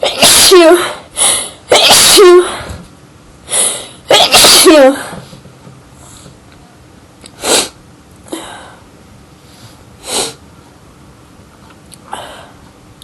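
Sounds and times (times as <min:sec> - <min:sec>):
person sniffing and sneezing: 0:00.0 - 0:00.9, 0:07.4 - 0:07.8, 0:10.0 - 0:10.4.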